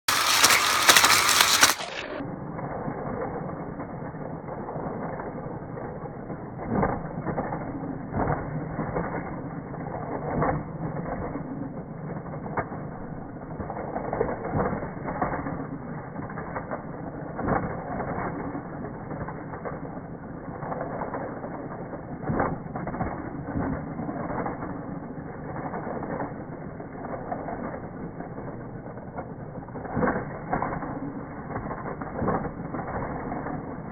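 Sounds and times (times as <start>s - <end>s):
toy cars rattling on plastic track: 0.0s - 2.2s.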